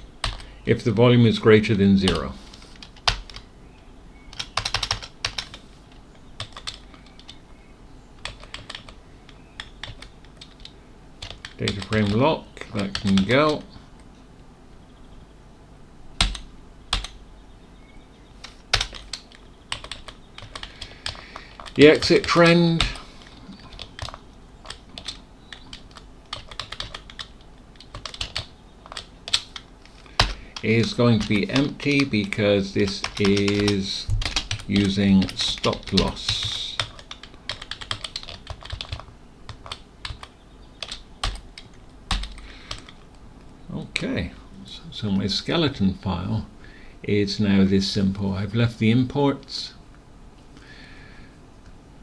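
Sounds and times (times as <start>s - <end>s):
computer keyboard typing: 0.0s - 0.6s, 2.0s - 3.5s, 4.2s - 7.6s, 8.2s - 14.1s, 16.2s - 17.2s, 18.4s - 43.2s.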